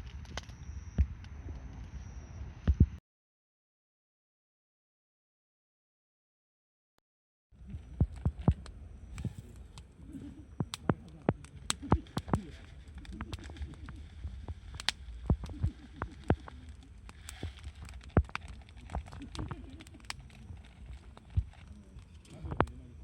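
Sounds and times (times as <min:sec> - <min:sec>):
campfire crackling and popping: 0:00.0 - 0:01.3, 0:07.6 - 0:23.0.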